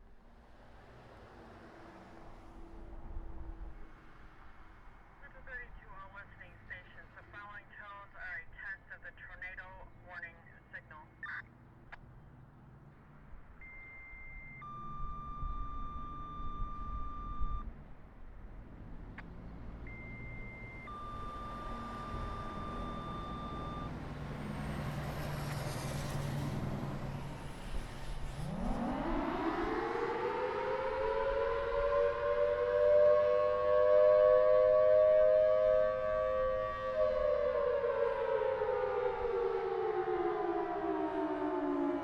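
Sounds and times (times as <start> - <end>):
warning siren winding: 13.6 - 17.6, 19.9 - 23.9.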